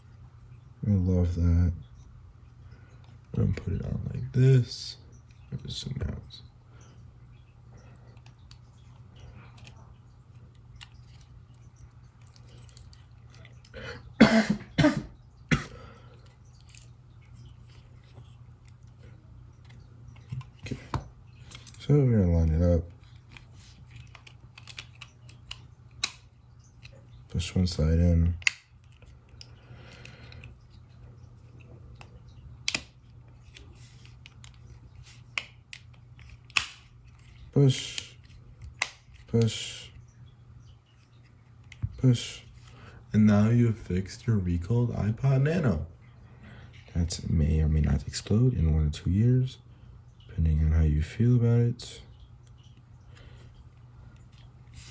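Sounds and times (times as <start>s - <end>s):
person coughing: 14.2s - 15.9s.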